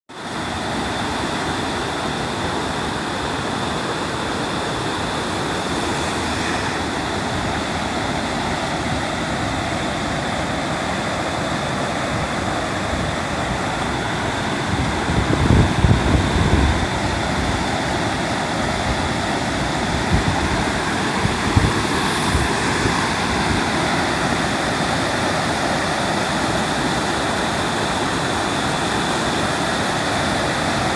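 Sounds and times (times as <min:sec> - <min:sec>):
wind gusts buffeting microphone: 0:02.3 - 0:30.9
storm wind rushing: 0:12.9 - 0:25.6.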